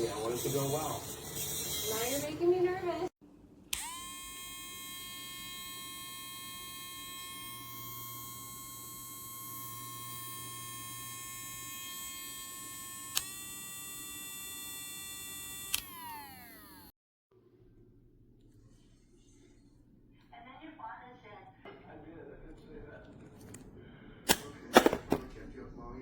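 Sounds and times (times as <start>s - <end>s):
nail grinder motor whining: 3.7s - 17.0s.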